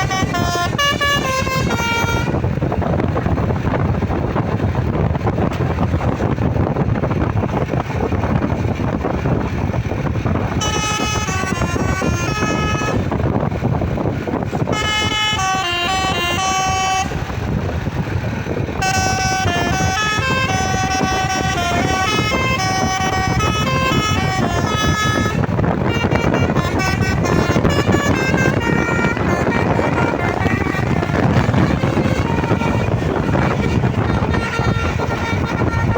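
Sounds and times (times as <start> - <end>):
multi-tone musical horn: 0.0 - 2.6, 10.5 - 13.2, 14.6 - 17.4, 18.8 - 35.9
steady low rumble: 0.0 - 35.9.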